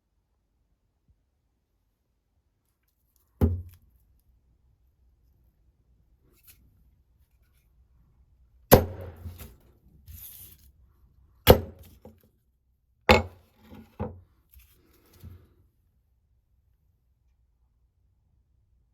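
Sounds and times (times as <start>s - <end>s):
hatchet chopping wood: 8.7s - 9.5s, 11.5s - 12.0s, 13.1s - 13.4s.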